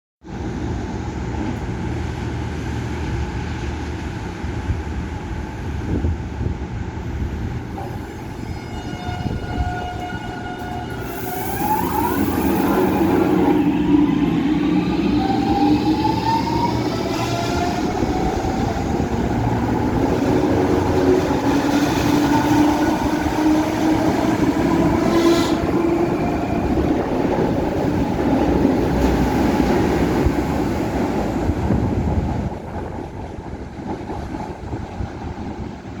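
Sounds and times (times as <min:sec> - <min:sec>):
rising whine: 0:10.9 - 0:19.8.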